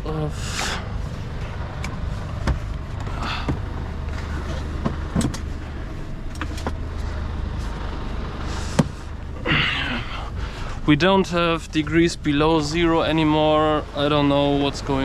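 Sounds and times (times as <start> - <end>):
diesel truck engine idling: 0.0 - 15.0
clicks and knocks in cab: 1.8 - 3.7, 4.7 - 5.6.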